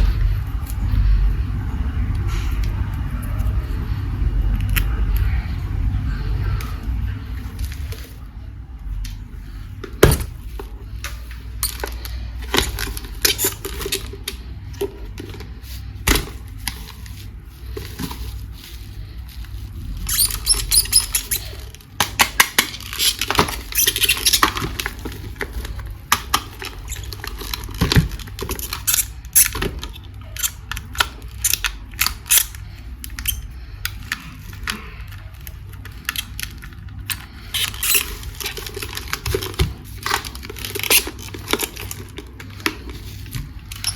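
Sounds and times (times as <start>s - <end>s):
packaging crinkling: 10.4s - 43.9s.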